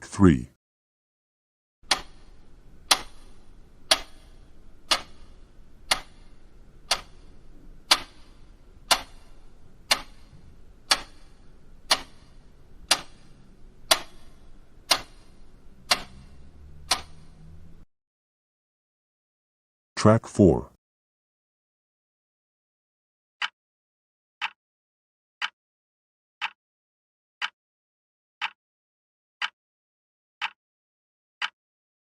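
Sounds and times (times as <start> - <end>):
clock ticking: 1.9 - 17.6.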